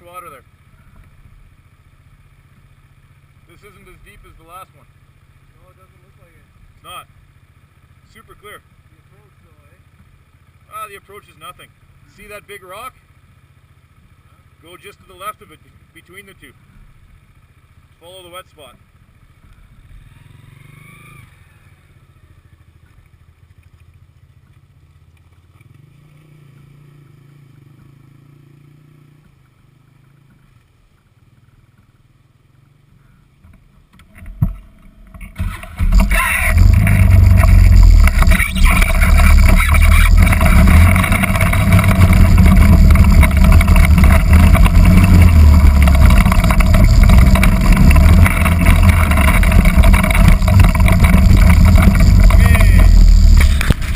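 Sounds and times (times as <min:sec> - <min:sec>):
vehicle engine idling: 0:00.0 - 0:26.0, 0:29.3 - 0:53.9.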